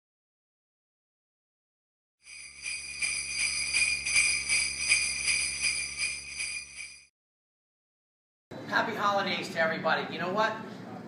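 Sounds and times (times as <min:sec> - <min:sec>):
jingle bells shaken: 0:02.3 - 0:07.1.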